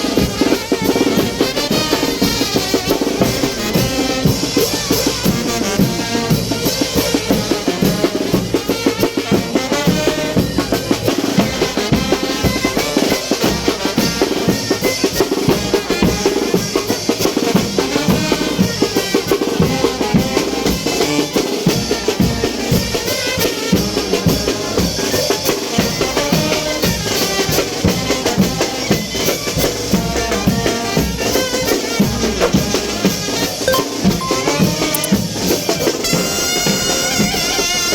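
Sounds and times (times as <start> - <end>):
brass band playing: 0.0 - 16.2.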